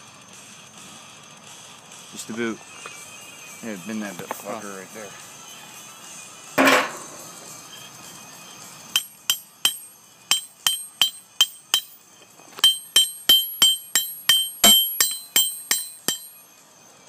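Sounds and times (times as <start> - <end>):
hammer striking hot steel: 6.6 - 7.5, 8.9 - 16.5.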